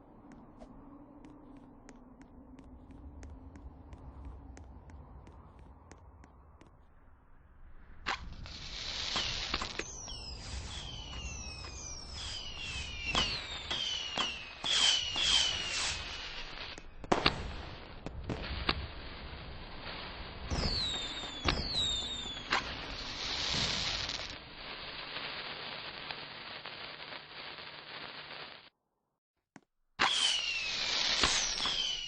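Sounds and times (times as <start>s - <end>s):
hissing crackle: 0.3s - 28.7s, 30.0s - 32.0s
whistling rockets falling in pitch: 8.1s - 18.9s, 20.4s - 24.4s, 30.0s - 32.0s
firework bangs: 8.1s - 26.3s, 30.0s - 32.0s.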